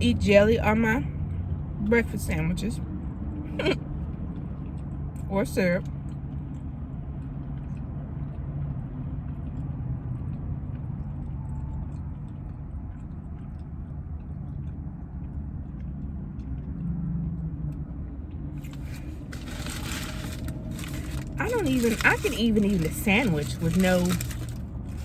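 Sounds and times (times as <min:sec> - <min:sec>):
car cabin rumble: 0:03.5 - 0:03.8, 0:18.6 - 0:25.0
person chewing: 0:18.6 - 0:22.0
loud rustling: 0:18.6 - 0:25.0.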